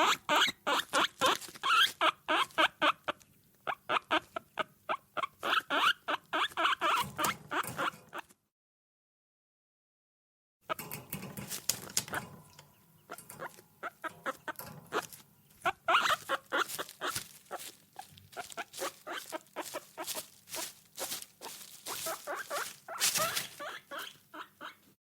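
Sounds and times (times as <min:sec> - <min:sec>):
guinea pig squeaking: 0:00.0 - 0:08.3, 0:13.0 - 0:24.9
small clicks and rustles: 0:10.8 - 0:24.3.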